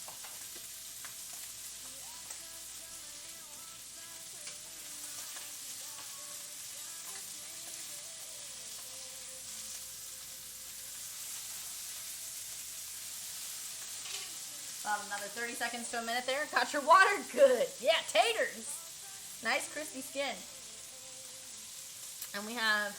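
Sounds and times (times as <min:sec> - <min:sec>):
steaks sizzling in a frying pan: 0:00.0 - 0:22.9.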